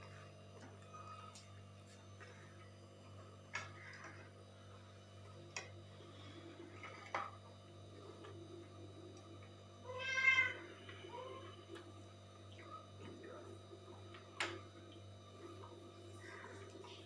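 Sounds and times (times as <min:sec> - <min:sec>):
cat meowing: 0:09.9 - 0:11.2.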